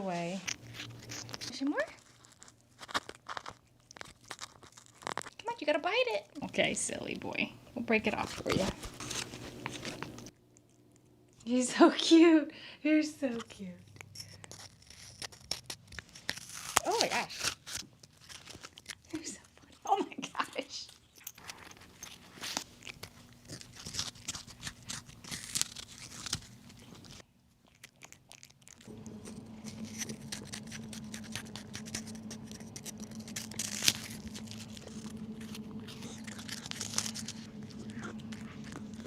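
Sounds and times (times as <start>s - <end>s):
low steady hum: 0.0s - 16.9s, 28.7s - 39.0s
cat crunching a treat: 0.3s - 6.4s, 8.1s - 11.6s, 13.3s - 39.0s.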